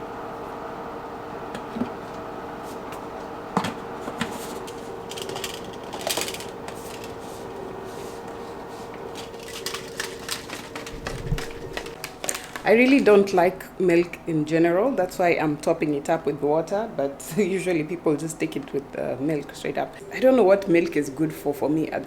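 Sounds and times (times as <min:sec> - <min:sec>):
room hum: 0:00.0 - 0:22.0
containers and utensils clattering: 0:03.6 - 0:07.4, 0:08.9 - 0:12.6.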